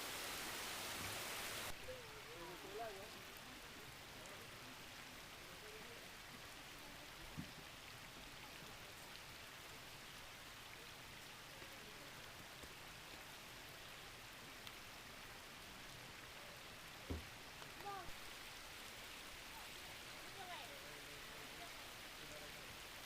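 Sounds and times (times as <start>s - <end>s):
stream water rushing: 0.0s - 23.0s
soft low thump: 17.0s - 17.4s.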